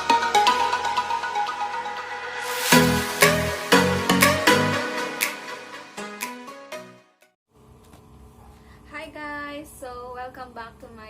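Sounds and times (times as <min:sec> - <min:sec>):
electronic dance music: 0:00.0 - 0:07.2.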